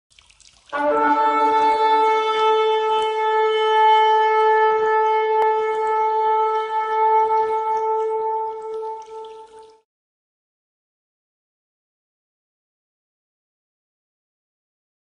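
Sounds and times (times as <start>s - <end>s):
shofar blast: 0.7s - 9.8s.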